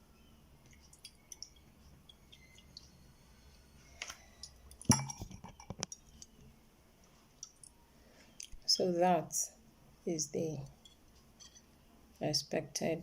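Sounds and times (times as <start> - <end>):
utensil clinking against jug: 4.4 - 6.0.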